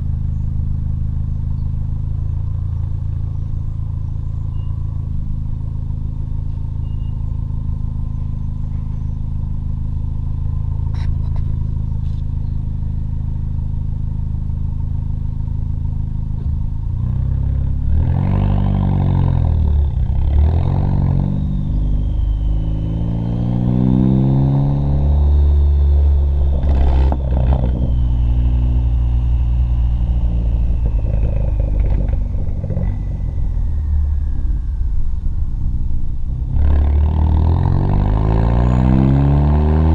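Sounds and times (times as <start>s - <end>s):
high turbo whine: 0.0s - 39.9s
car engine revving: 16.0s - 39.9s.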